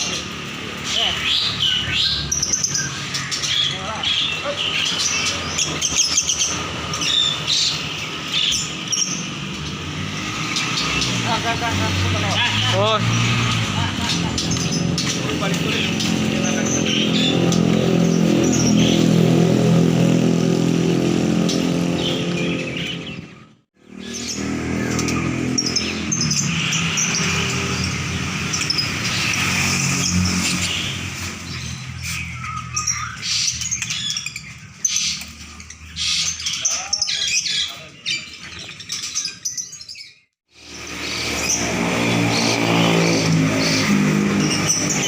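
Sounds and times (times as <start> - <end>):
songbirds chirping: 0.0 - 45.0
vehicle engine running: 9.5 - 27.0.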